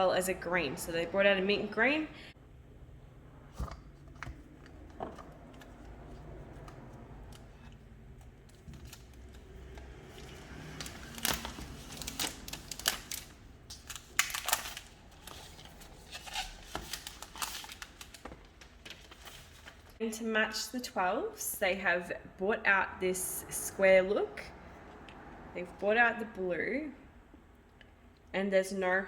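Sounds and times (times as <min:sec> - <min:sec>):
packaging crinkling and ripping: 0:08.5 - 0:20.0.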